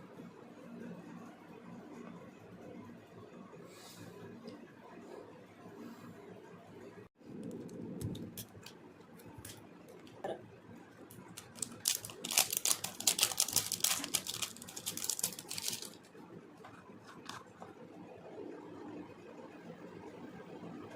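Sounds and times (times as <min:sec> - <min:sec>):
packaging crinkling: 0:11.1 - 0:16.1
packaging clicks and taps: 0:11.4 - 0:16.0.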